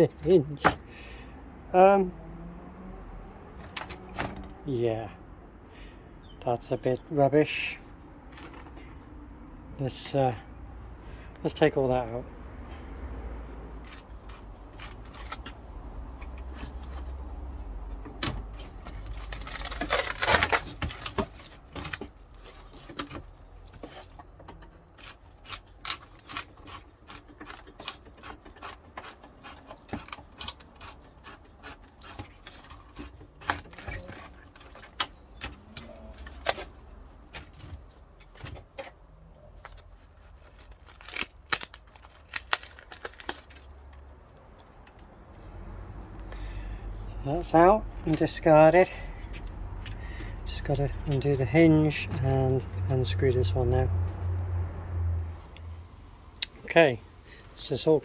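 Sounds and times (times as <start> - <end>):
wood clattering and crunching: 13.8 - 45.4.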